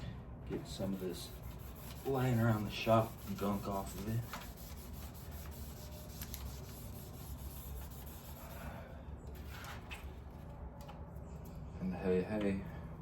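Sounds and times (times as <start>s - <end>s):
cloth rubbing on metal panel: 0.6s - 8.6s.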